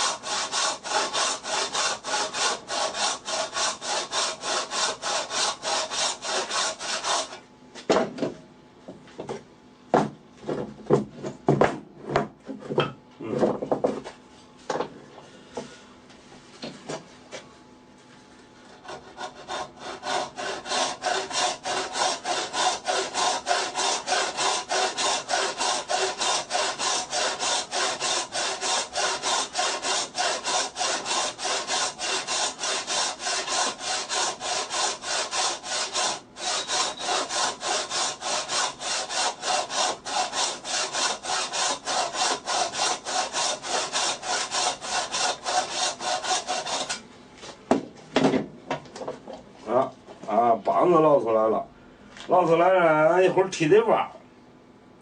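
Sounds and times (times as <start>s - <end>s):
hand saw cutting wood: 0.0s - 7.4s, 18.7s - 47.0s.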